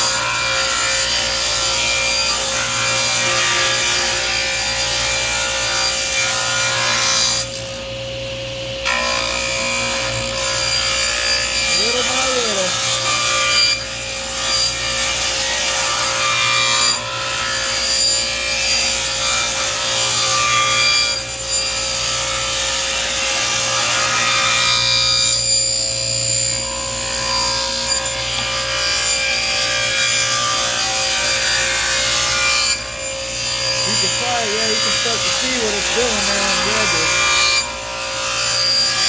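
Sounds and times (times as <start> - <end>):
table saw whine: 0.0 - 39.0
saw blade scraping wood: 10.6 - 13.5, 27.1 - 37.8.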